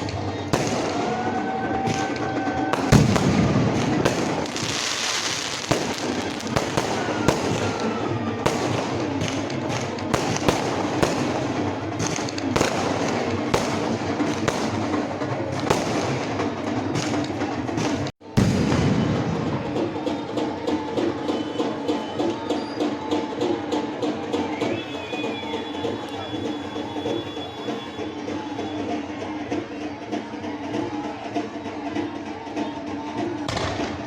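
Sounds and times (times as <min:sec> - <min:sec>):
firework whistling: 0:00.0 - 0:18.1, 0:24.5 - 0:28.9
fireworks bangs and crackling: 0:00.0 - 0:32.0, 0:32.8 - 0:34.0
music: 0:00.0 - 0:34.0.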